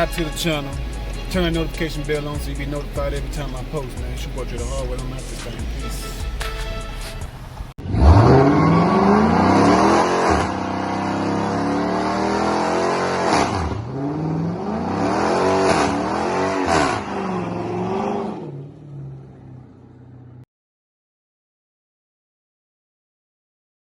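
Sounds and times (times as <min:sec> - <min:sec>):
car engine revving hard: 0:07.4 - 0:19.4.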